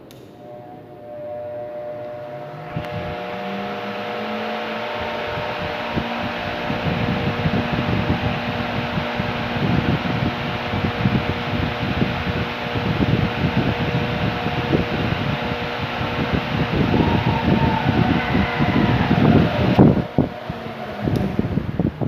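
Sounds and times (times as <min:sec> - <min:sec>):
click: 0:00.0 - 0:00.4, 0:21.1 - 0:21.3
fan motor humming: 0:00.0 - 0:22.0
fluttering blade airflow: 0:02.5 - 0:22.0
rush of air: 0:15.7 - 0:22.0.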